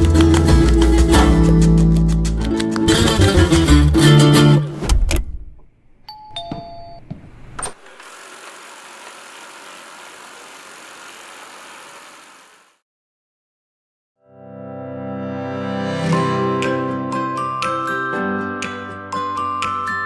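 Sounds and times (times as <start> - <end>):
vacuum suction motor rushing: 7.7 - 12.8.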